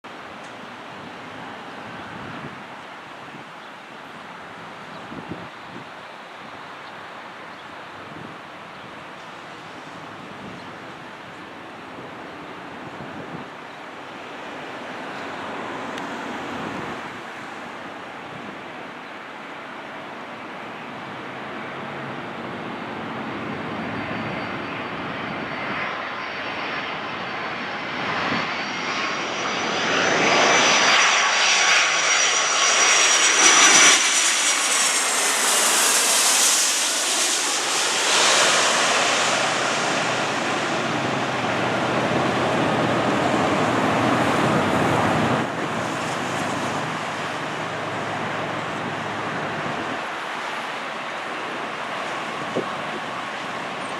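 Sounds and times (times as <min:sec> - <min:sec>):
broad jet rumble: 0:00.1 - 0:53.9
jet airliner passing close: 0:09.2 - 0:18.5, 0:20.8 - 0:53.9.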